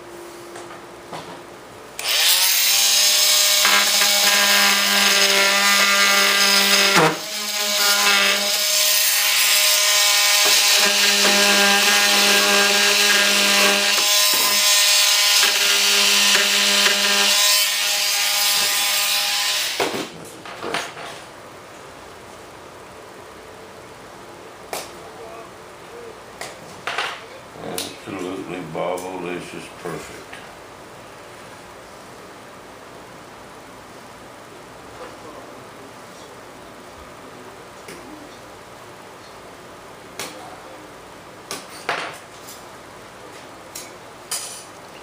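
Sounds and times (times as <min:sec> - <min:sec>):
electric power tool cutting: 0:02.0 - 0:19.9.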